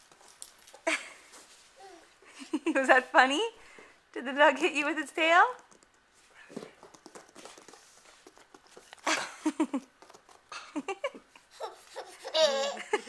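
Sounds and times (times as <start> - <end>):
baby giggling: 10.5 - 13.0.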